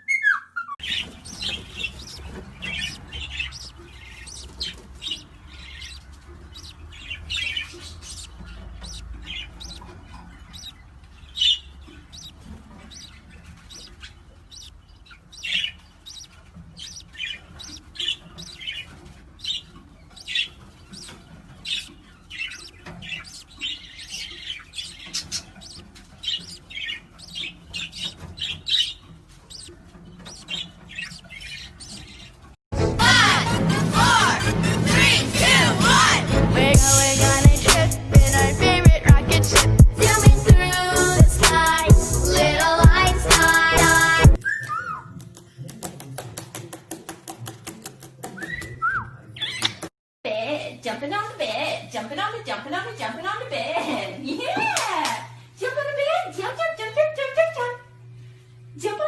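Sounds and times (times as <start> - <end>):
parrot chirping and squawking: 0.0 - 32.6, 36.8 - 45.2.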